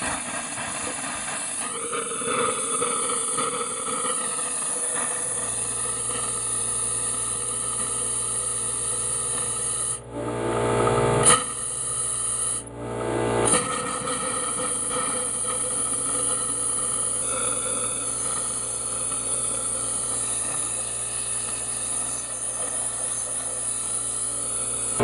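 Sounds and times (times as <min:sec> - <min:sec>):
steady low hum: 0:00.0 - 0:13.6
compressed air hissing from faucet: 0:00.2 - 0:10.0, 0:14.6 - 0:25.0.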